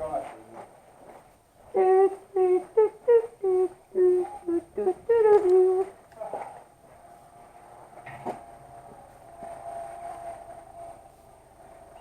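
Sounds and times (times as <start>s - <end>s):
person humming: 1.7s - 6.0s.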